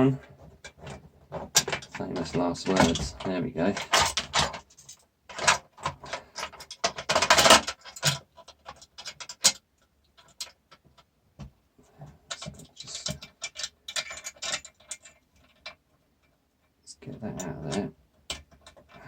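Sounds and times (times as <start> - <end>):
metal parts clicking and clinking: 0.6 - 10.8, 12.3 - 15.8.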